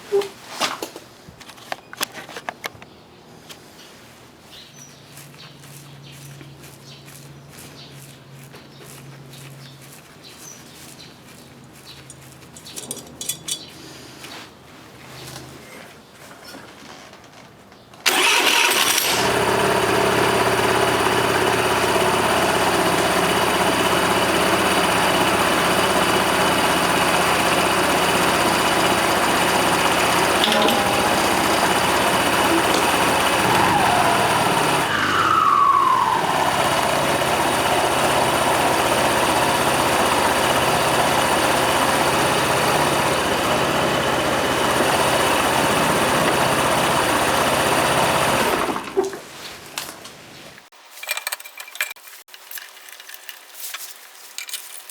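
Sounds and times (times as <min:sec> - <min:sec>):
scooter engine starting and idling: 0:12.6 - 0:13.7, 0:18.0 - 0:50.0.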